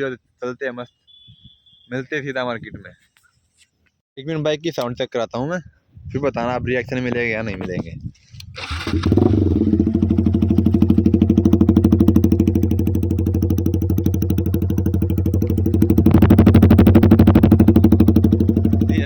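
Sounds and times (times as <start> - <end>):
motorcycle engine running loudly: 8.9 - 19.0.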